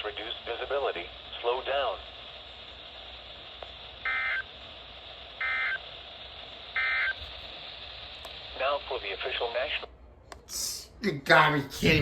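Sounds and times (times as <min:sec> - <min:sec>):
digital data tone bursts: 0:05.4 - 0:05.8.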